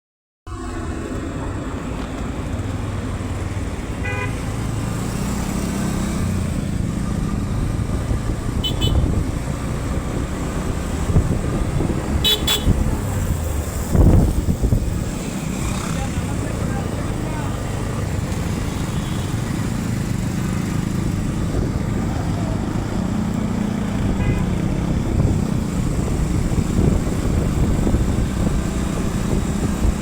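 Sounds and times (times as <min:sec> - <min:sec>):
vehicle engine and road rumble: 0:00.5 - 0:30.0
short vehicle horn toots: 0:04.0 - 0:04.4, 0:08.6 - 0:09.2, 0:12.2 - 0:12.8, 0:24.2 - 0:24.6.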